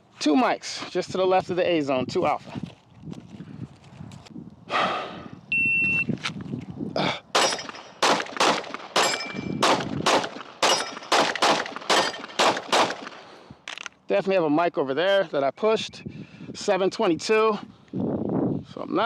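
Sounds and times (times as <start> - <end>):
pistol shots: 7.3 - 13.3.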